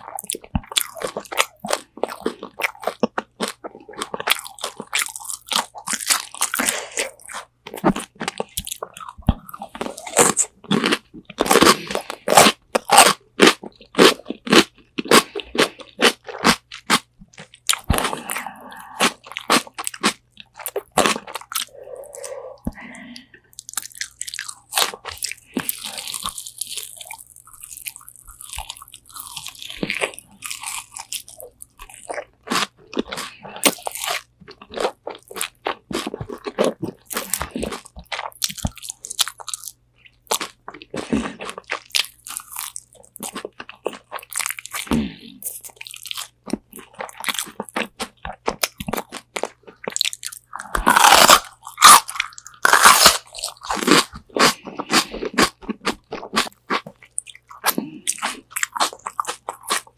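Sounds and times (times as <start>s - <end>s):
crunchy chewing: 0.0s - 59.9s.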